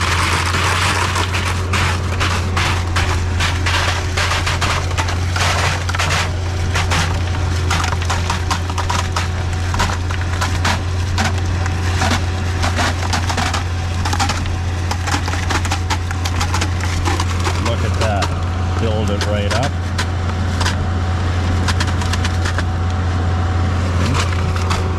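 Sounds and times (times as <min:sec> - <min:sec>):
wet concrete crackling and spattering: 0:00.0 - 0:23.0, 0:23.8 - 0:24.9
concrete pump truck humming: 0:00.0 - 0:24.9.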